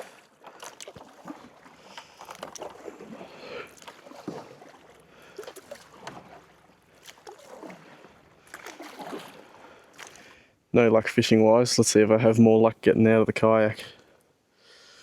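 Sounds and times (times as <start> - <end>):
paddle splashing in water: 0.0 - 10.5.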